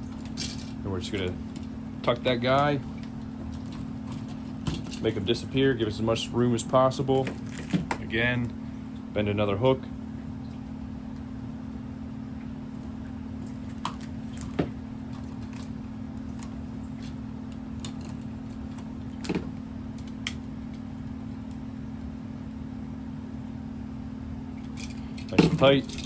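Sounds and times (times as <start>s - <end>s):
steady low hum: 0.0s - 26.0s.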